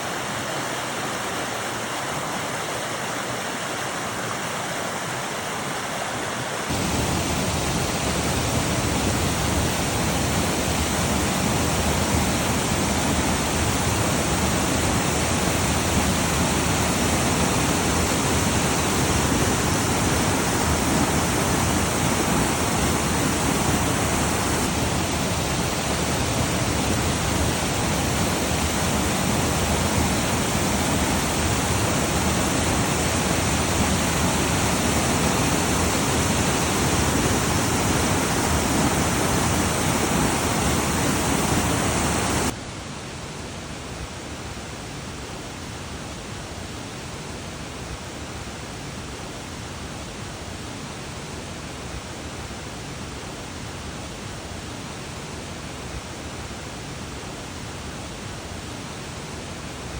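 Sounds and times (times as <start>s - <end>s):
water rushing: 0.0s - 42.6s.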